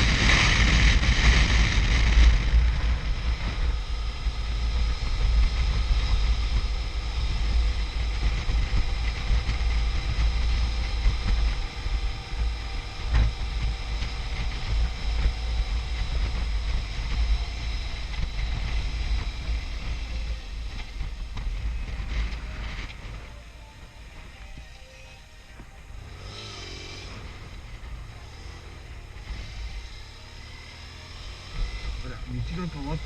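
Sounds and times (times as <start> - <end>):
wind rumble on microphone: 0.0 - 26.3
motorcycle engine cruising: 0.0 - 33.0.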